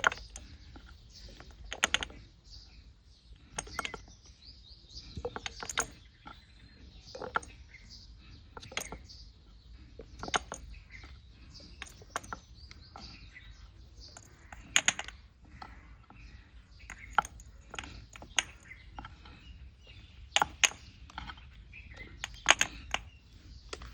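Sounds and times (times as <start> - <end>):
birds chirping: 0.0 - 23.9
hands clicking small objects: 14.2 - 15.2, 22.2 - 23.1.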